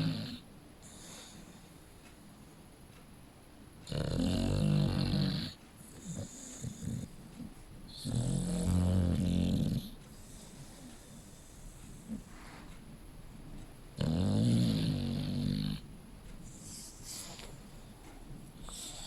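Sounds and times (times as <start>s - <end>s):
puppy snoring: 0.0s - 1.6s, 3.8s - 12.7s, 13.9s - 19.0s
soft breathing: 0.8s - 2.7s, 5.4s - 8.6s, 9.8s - 13.8s, 14.7s - 19.0s.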